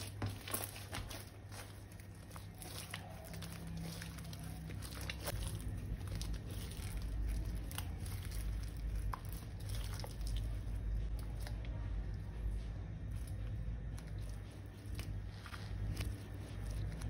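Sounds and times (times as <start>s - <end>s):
slime squished by hand: 0.0s - 11.8s
low handling rumble: 0.0s - 17.0s
small wet clicks and crackles: 0.0s - 17.0s.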